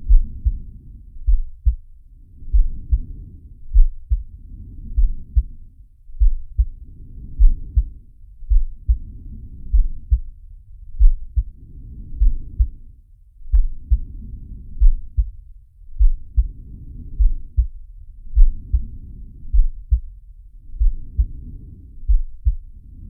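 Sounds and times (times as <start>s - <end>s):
heartbeat thumps: 0.0s - 1.9s, 2.5s - 3.1s, 3.7s - 4.3s, 5.0s - 5.6s, 6.2s - 6.8s, 7.4s - 9.1s, 9.7s - 10.4s, 11.0s - 11.5s, 12.2s - 12.8s, 13.5s - 14.1s, 14.8s - 15.4s, 16.0s - 16.5s, 17.2s - 18.9s, 19.5s - 20.2s, 20.8s - 21.4s, 22.1s - 22.8s.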